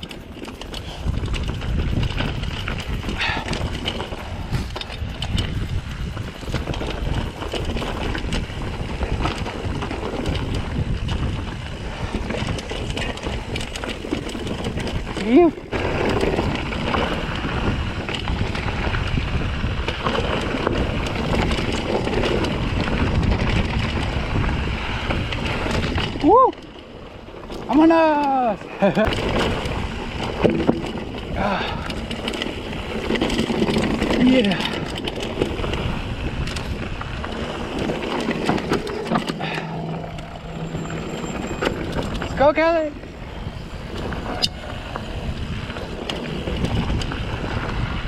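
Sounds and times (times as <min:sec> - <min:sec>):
wind on microphone: 0:00.0 - 0:27.8, 0:28.7 - 0:48.0
bike tyres clattering over rocks: 0:00.0 - 0:48.0
steady hum: 0:37.9 - 0:43.4.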